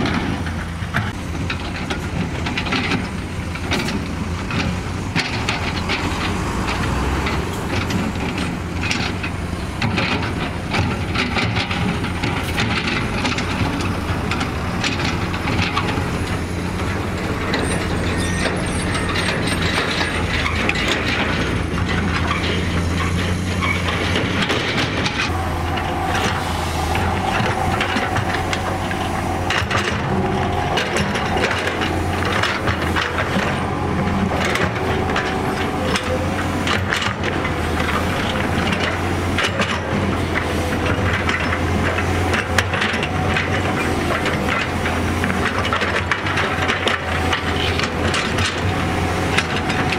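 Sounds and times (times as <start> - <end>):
heavy diesel machinery engine: 0.0 - 49.9
metallic clanking and rattling: 0.0 - 49.9
higher steady tone: 25.3 - 32.2.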